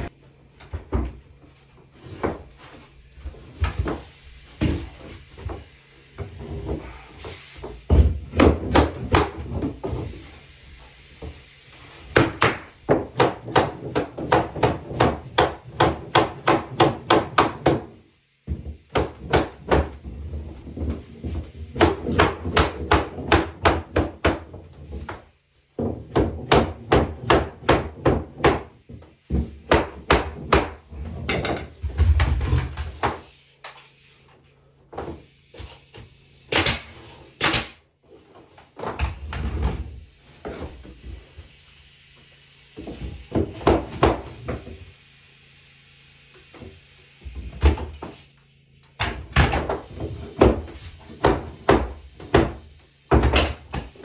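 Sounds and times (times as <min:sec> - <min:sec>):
hammer driving nails into wood: 0:36.5 - 0:37.8.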